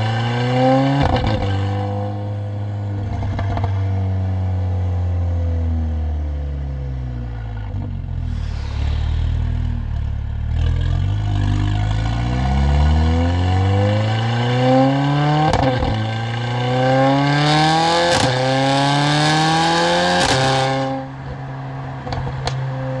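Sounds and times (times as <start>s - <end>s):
exhaust cracks: 8.1s - 13.6s
car engine accelerating hard: 8.2s - 22.5s.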